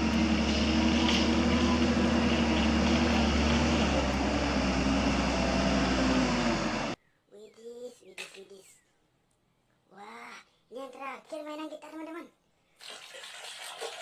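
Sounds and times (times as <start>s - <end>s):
small motor humming and whining: 0.0s - 7.0s.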